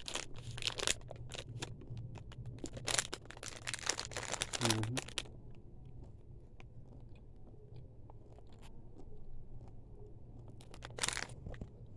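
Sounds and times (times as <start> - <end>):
person chewing candy: 0.0 - 11.9.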